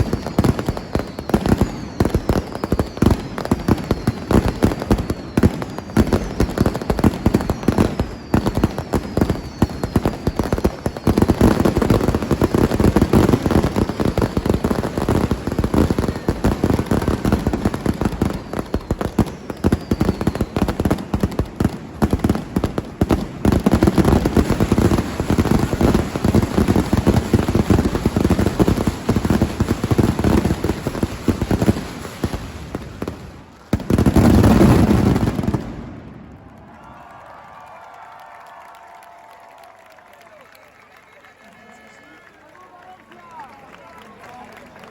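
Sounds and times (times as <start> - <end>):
fireworks whistles: 0.0 - 36.0
firecrackers crackling and banging: 0.0 - 38.1.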